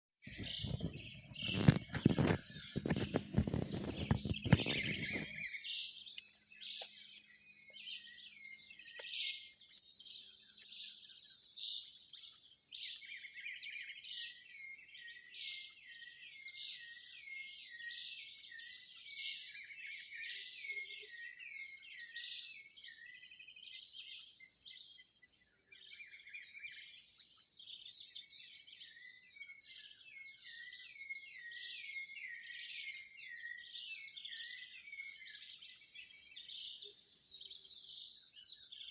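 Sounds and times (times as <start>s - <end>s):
small birds chirping and calling: 0.2s - 38.9s.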